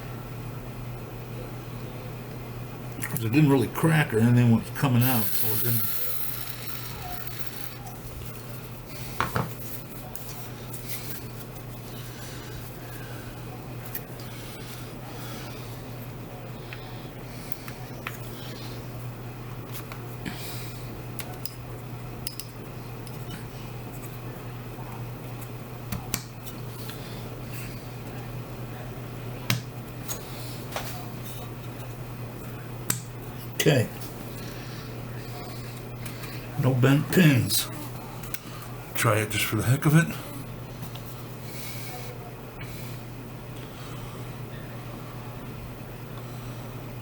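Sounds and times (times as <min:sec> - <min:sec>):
low electrical hum: 0:00.0 - 0:47.0
small parts clicking and scraping: 0:05.0 - 0:07.9.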